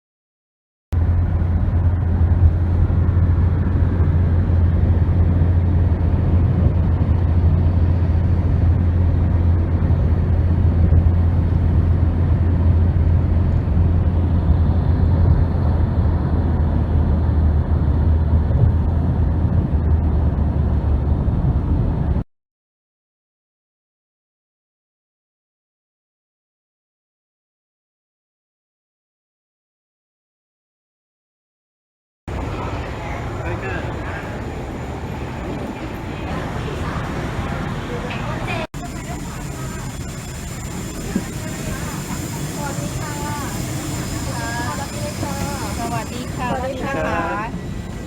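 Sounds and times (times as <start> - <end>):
vehicle low rumble: 1.0 - 22.2, 32.3 - 48.0.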